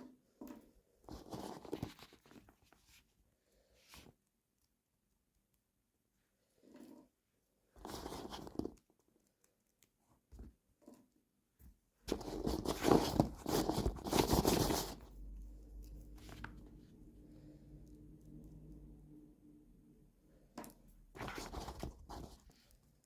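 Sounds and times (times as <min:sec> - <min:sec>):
faint low hum: 0:11.7 - 0:23.0.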